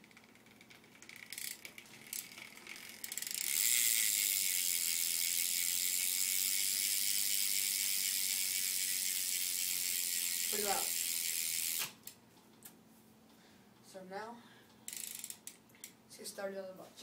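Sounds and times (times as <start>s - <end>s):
freewheel ratcheting buzz: 0.0s - 12.1s, 14.9s - 15.6s
bike hub pawl clicks: 0.0s - 12.2s, 14.9s - 16.0s.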